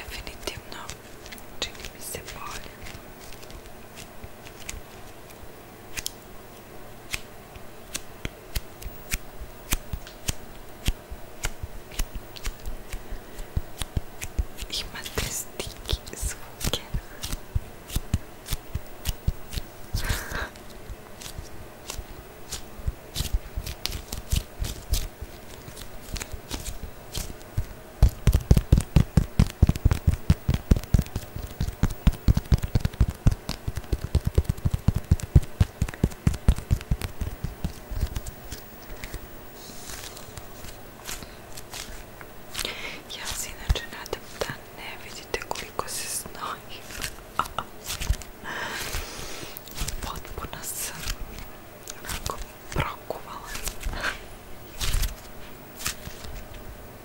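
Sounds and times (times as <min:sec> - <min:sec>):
tapping and scratching on object: 0:21.2 - 0:39.2.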